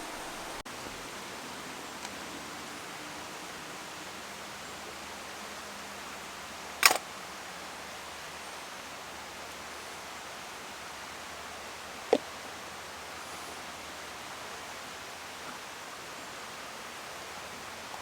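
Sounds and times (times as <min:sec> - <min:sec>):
steady hiss: 0:00.0 - 0:18.0
faint click: 0:06.8 - 0:07.0.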